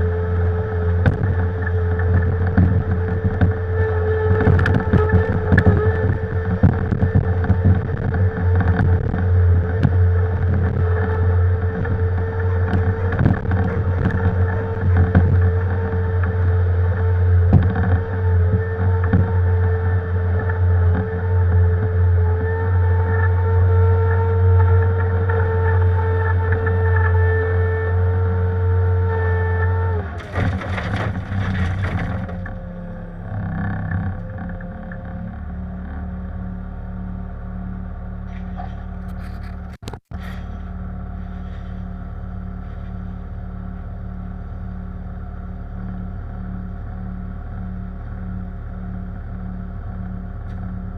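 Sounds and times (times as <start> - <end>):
diesel engine drone: 0.0 - 50.9
machine whine: 0.0 - 50.9
steel bucket scraping shale: 30.2 - 32.4.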